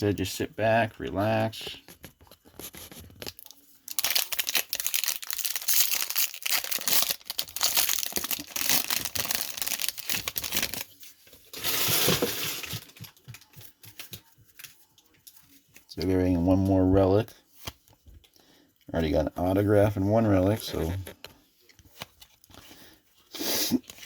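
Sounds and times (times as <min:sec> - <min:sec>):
foil wrapper tearing and crinkling: 0:02.6 - 0:10.9.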